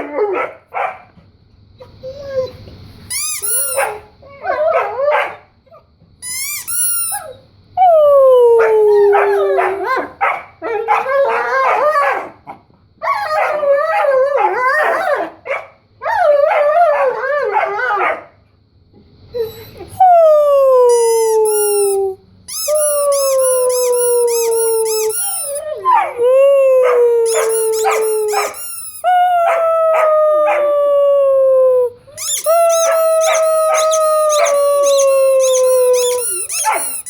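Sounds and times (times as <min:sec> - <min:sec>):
dogs howling: 0:00.0 - 0:00.6, 0:03.8 - 0:05.4, 0:07.8 - 0:12.4, 0:13.0 - 0:18.3, 0:22.9 - 0:37.0
high-pitched squeaks: 0:03.1 - 0:04.0, 0:06.2 - 0:07.3, 0:20.9 - 0:25.7, 0:27.3 - 0:29.2, 0:32.2 - 0:37.0.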